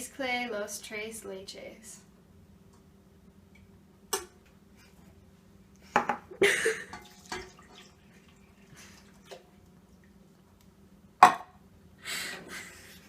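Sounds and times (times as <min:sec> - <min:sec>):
milk pouring into a bowl: 0:06.9 - 0:10.2.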